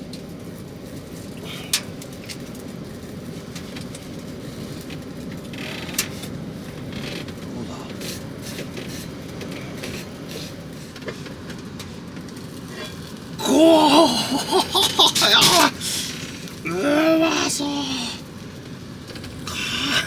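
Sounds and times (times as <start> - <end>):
steady low rumble: 6.4 - 20.0.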